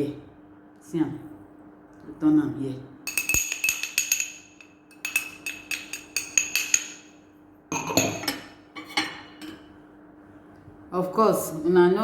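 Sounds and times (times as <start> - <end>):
spoon tapping a ringing container: 3.1 - 8.5.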